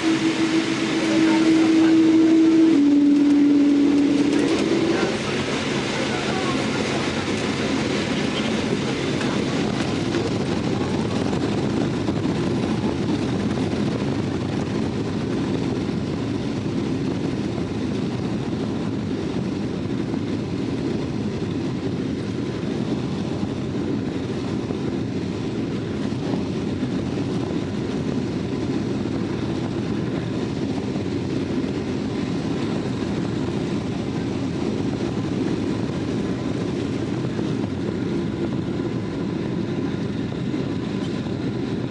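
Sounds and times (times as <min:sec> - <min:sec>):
jet engines rumbling in cabin: 0:00.0 - 0:41.9
rush of air: 0:00.0 - 0:41.9.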